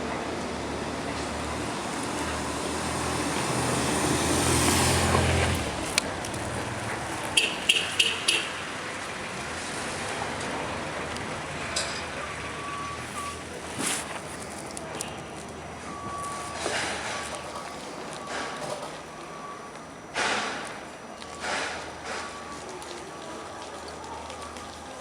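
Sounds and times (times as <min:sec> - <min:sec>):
street background: 0:00.0 - 0:25.0
vehicle driving past: 0:00.6 - 0:11.6.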